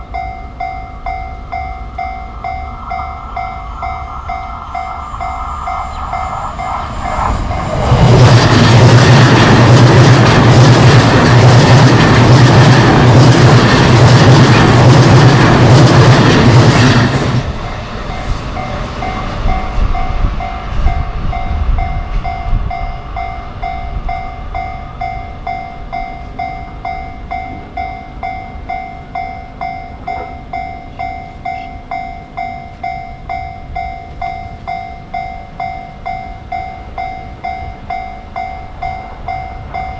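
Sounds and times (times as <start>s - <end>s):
level crossing alarm bell dinging: 0.0s - 8.2s
train passing with rail noise: 0.0s - 39.9s.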